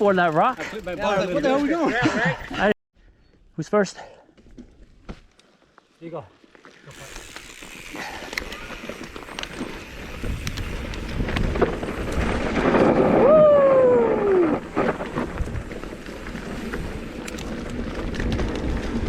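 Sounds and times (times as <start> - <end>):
bike rattling: 0.0 - 2.7, 4.4 - 19.0
bike tyres on dirt and rocks: 0.0 - 2.7, 4.3 - 19.0
wind on microphone: 10.0 - 15.9.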